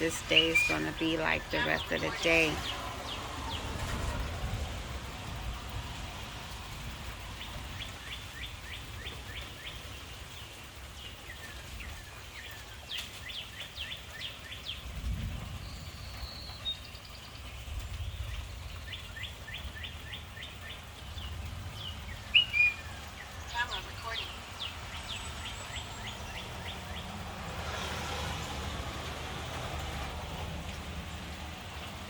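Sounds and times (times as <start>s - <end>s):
songbird chirping: 0.0s - 4.1s, 5.2s - 32.0s
bird high whistle: 22.4s - 22.8s.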